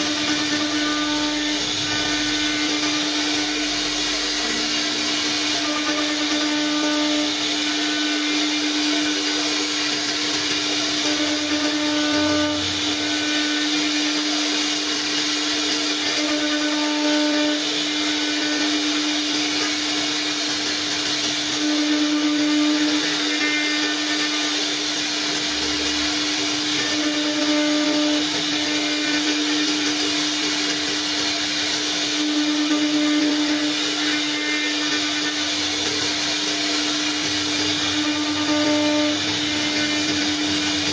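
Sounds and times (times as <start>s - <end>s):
router spindle high whine: 0.0s - 40.9s.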